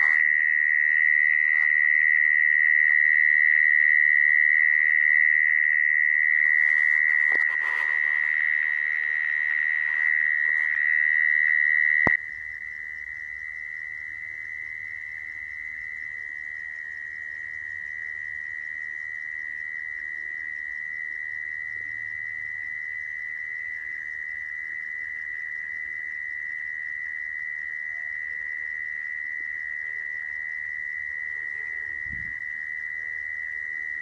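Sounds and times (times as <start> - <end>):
mole cricket trilling: 0.0 - 34.0.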